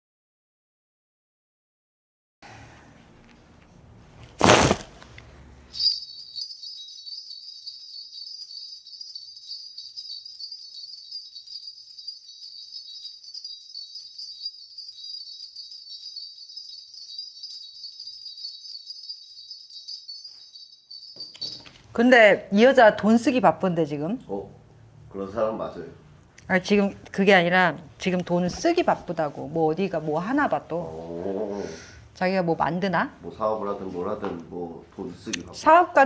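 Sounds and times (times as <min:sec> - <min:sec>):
brass bells jingling: 0:05.7 - 0:23.3.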